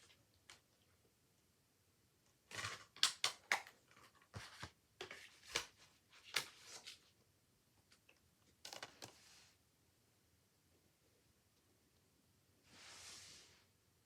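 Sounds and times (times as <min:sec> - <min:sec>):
paper and plastic case rustling: 0:02.5 - 0:07.0.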